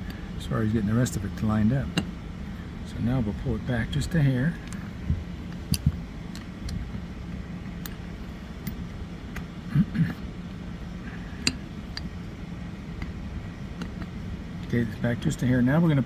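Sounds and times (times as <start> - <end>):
low background hum: 0.0 - 16.0
sharp metallic clicks and taps: 4.7 - 7.1, 8.6 - 9.5, 11.4 - 12.1.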